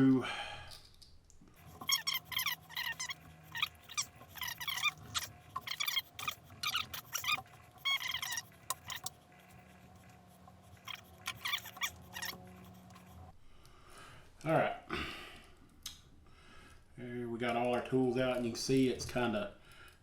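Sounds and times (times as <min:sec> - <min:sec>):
knife tools squeaking and scraping: 0:01.6 - 0:13.3.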